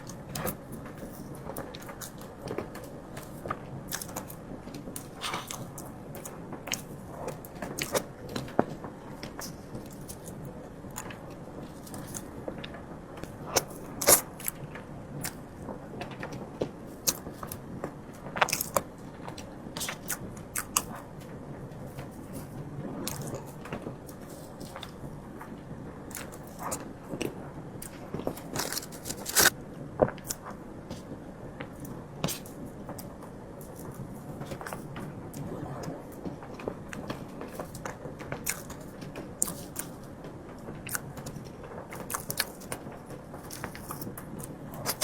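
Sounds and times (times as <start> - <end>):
person chewing and biting: 28.3 - 29.5, 38.4 - 38.8, 42.0 - 42.6, 43.5 - 44.1, 44.8 - 45.0.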